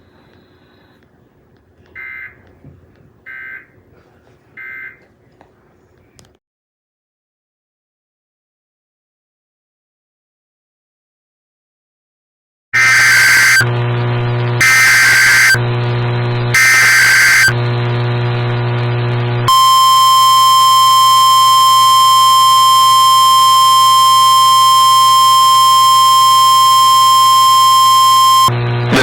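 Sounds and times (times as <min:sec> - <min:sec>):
steady warning alarm tone: 0:03.3 - 0:03.7, 0:12.8 - 0:13.8, 0:14.6 - 0:15.6, 0:16.5 - 0:17.6, 0:19.5 - 0:29.0
buzzing digital data bursts: 0:12.8 - 0:15.6, 0:16.3 - 0:17.6.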